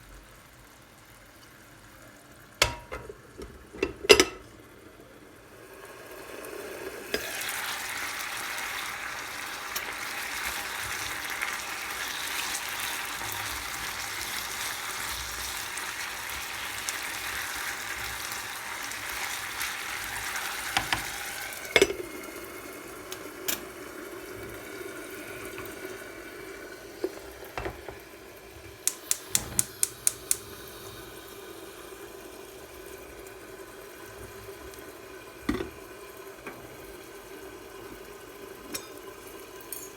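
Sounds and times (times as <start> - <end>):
steady hiss: 27.0 - 33.3
sharp clicks: 28.8 - 30.4.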